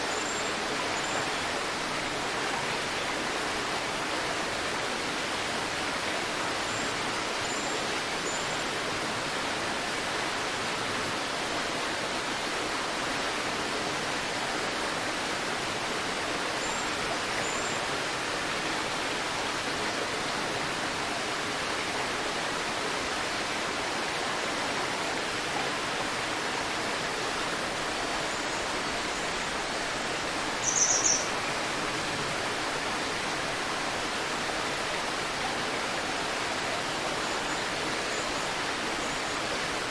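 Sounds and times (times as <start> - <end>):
river rushing: 0.0 - 39.9
high bird chirps: 30.6 - 31.3.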